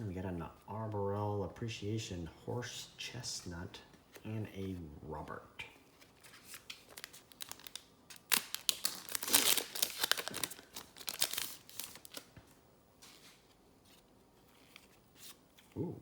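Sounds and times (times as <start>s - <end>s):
foil wrapper tearing and crinkling: 6.2s - 12.3s.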